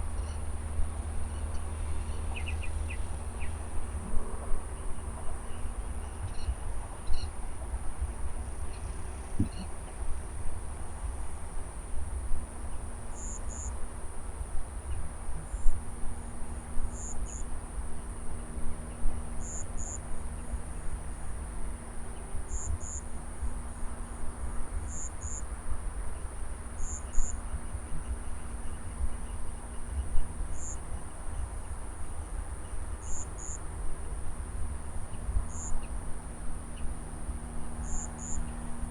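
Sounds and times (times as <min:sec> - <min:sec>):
insects trilling: 0:35.5 - 0:35.8, 0:37.7 - 0:38.6
insect double chirp: 0:37.8 - 0:38.5.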